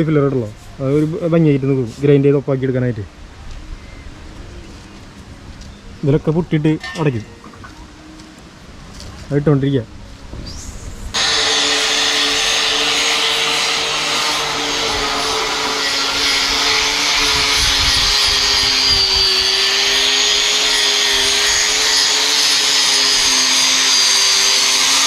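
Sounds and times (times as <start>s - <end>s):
electric grinder running: 11.2s - 25.0s.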